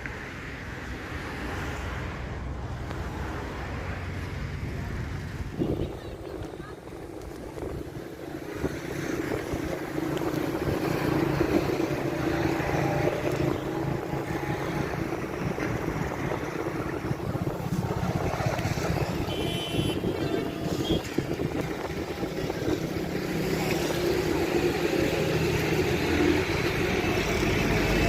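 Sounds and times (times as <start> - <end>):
wind buffeting microphone: 4.6 - 28.0
engine running: 6.4 - 28.0.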